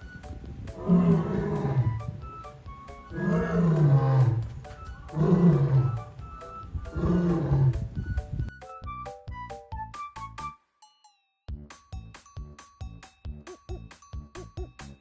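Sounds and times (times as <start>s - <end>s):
background music: 0.0s - 15.0s
lion roaring: 0.8s - 2.0s, 3.1s - 6.2s, 6.9s - 7.9s.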